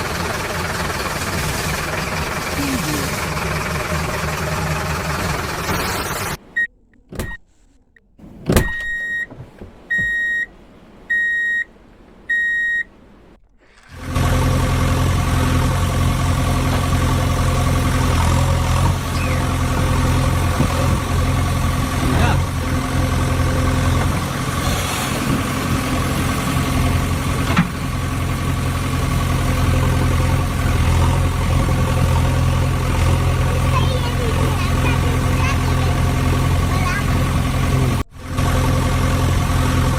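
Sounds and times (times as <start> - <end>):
engine idling: 0.0 - 9.2, 13.4 - 39.9
toy engine-like sound: 1.0 - 6.4, 19.1 - 19.6.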